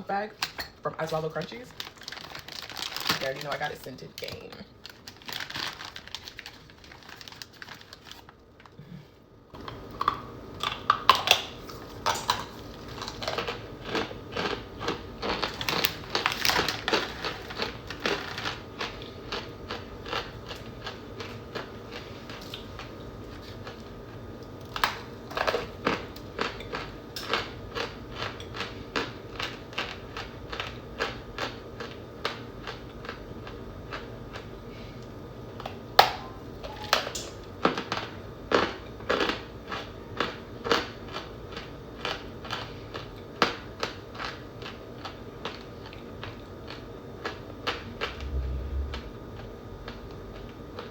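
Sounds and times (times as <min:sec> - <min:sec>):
cornstarch chunks crunching: 0:10.0 - 0:22.4.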